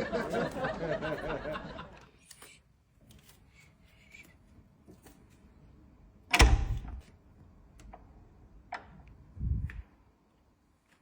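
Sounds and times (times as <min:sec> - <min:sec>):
door slamming: 0:06.3 - 0:07.1.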